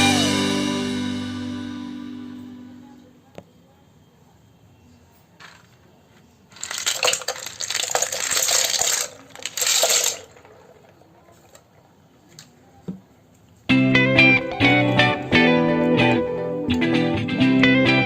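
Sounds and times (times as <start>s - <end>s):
plastic keycaps rattling in a container: 6.5s - 10.8s.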